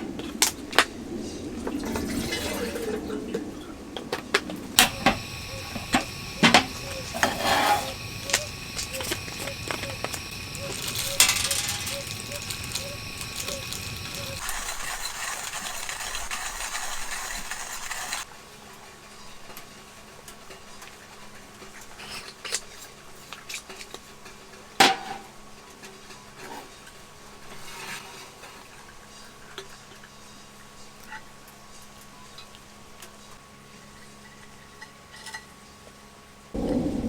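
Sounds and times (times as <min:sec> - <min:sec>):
dishes and utensils clinking: 0:04.8 - 0:18.2
steady hiss: 0:04.8 - 0:18.2.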